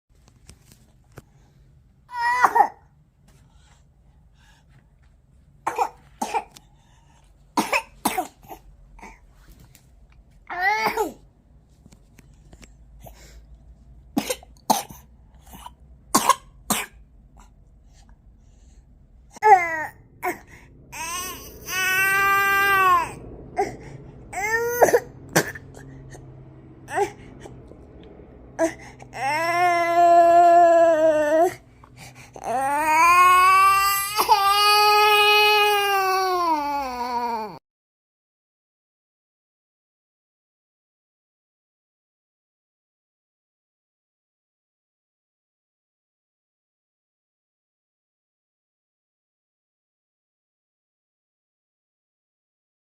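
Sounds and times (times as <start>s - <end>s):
young child crying: 2.1s - 2.8s, 10.5s - 11.2s, 19.4s - 25.6s, 32.4s - 37.6s
young child coughing: 7.6s - 8.7s, 14.2s - 17.0s, 24.8s - 25.9s.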